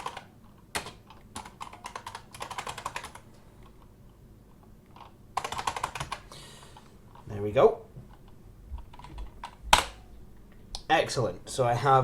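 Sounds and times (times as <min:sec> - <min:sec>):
computer keyboard typing: 0:00.0 - 0:03.3, 0:04.9 - 0:06.3, 0:08.8 - 0:09.9.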